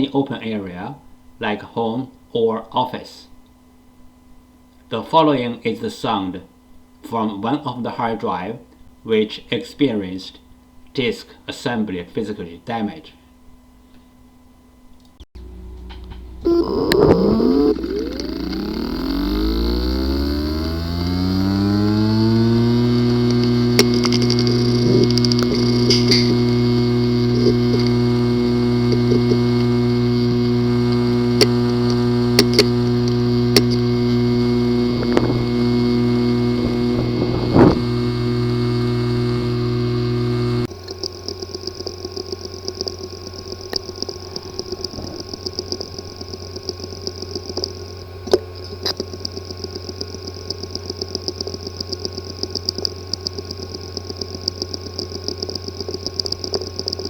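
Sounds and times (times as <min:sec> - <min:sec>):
hard drive buzzing hum: 0:00.0 - 0:57.0
thin high whine: 0:15.4 - 0:57.0
hard drive clicks: 0:15.7 - 0:57.0
rapid ticking: 0:16.5 - 0:57.0.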